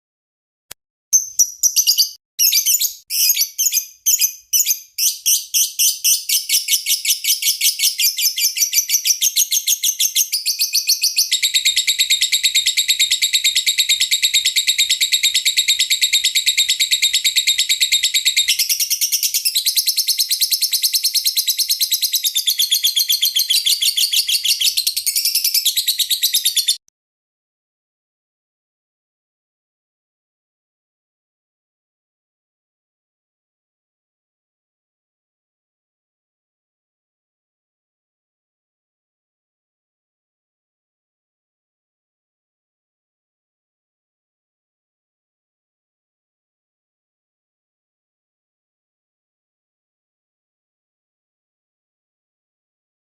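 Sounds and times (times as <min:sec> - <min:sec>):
lovebird chirping and trilling: 0:01.2 - 0:26.8.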